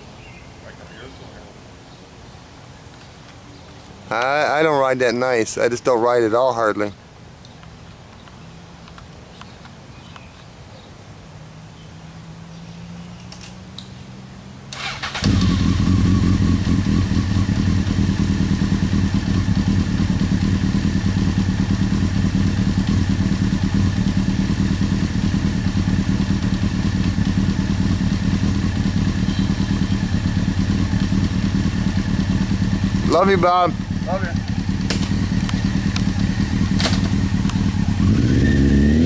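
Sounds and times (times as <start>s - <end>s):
motorcycle engine starting: 14.7s - 39.0s
motorcycle engine idling: 14.8s - 38.4s.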